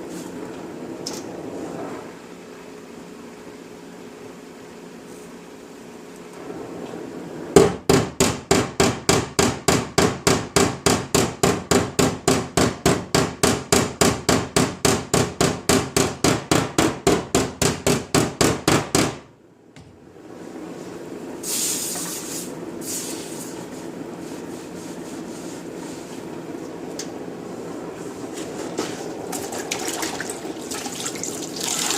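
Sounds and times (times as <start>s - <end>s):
hammer tapping on sheet metal: 7.6s - 19.3s
short hiss: 21.4s - 23.6s.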